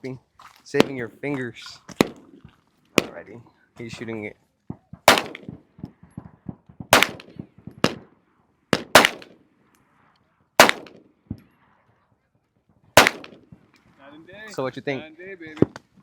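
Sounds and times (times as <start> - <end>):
pistol shots: 4.8 - 8.1, 8.7 - 9.4, 10.6 - 11.1, 13.0 - 13.5
faint gunshot reports: 6.9 - 8.0, 8.8 - 9.3, 10.6 - 10.9, 13.0 - 13.4.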